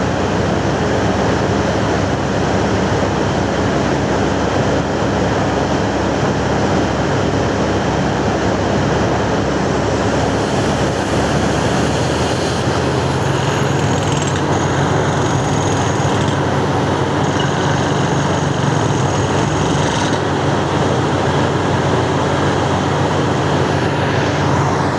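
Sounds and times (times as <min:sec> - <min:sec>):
drill rig running: 0:08.4 - 0:24.9.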